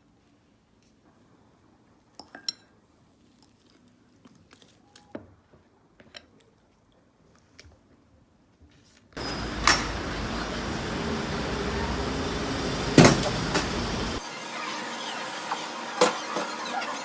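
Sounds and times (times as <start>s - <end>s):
road traffic rumble: 9.2s - 14.2s.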